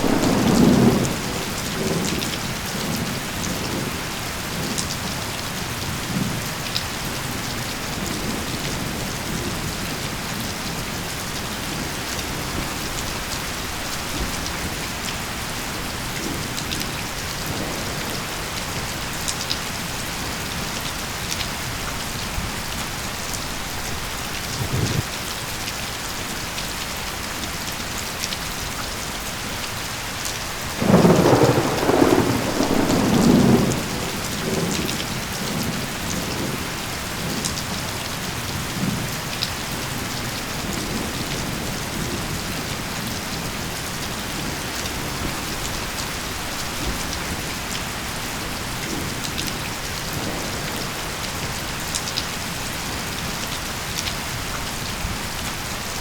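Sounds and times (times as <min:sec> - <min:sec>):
thunder rumbling: 0:00.0 - 0:04.6, 0:23.8 - 0:25.1, 0:30.8 - 0:37.8
steady rainfall hissing: 0:00.0 - 0:56.0.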